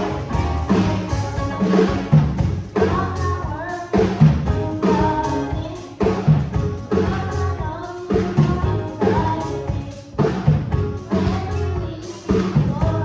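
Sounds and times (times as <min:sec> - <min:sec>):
drum kit beat: 0:00.0 - 0:13.0
live band playing: 0:00.0 - 0:13.0.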